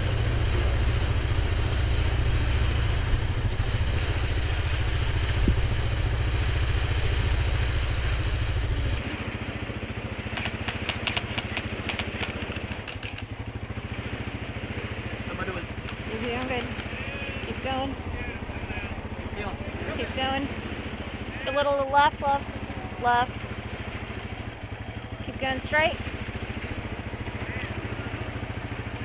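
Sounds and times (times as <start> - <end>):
atv engine running: 0.0 - 29.0
sharp clicks: 10.4 - 13.3, 15.8 - 16.9.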